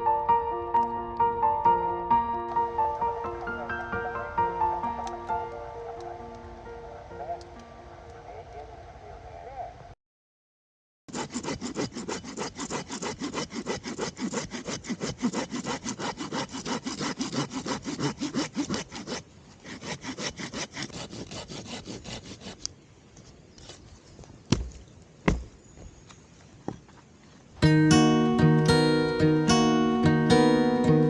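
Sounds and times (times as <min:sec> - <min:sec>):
hand saw cutting wood: 0:11.1 - 0:22.7
sharp knocks: 0:24.5 - 0:25.6.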